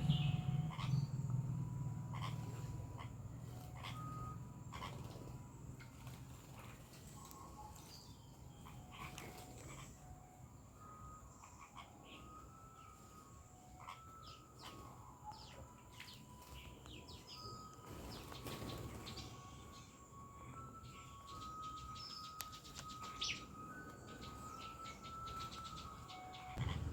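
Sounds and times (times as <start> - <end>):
small birds chirping: 0.0 - 26.9
whistled bird notes: 10.8 - 26.9.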